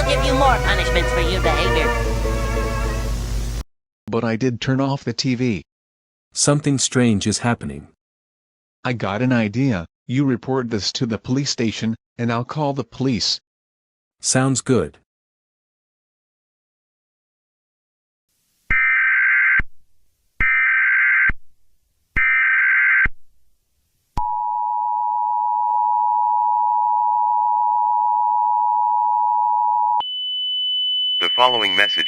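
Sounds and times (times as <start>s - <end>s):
high steady tone: 0.0s - 3.6s, 31.2s - 32.0s
data bursts: 31.2s - 32.0s
two-tone attention signal: 31.2s - 32.0s.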